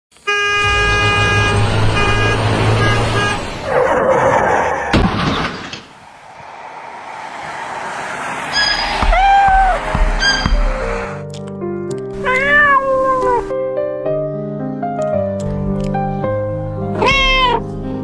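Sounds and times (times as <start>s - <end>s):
vehicle horn honking: 0.2s - 3.6s
low engine rumble: 0.5s - 3.7s, 6.0s - 11.2s
rushing swell: 5.9s - 11.3s.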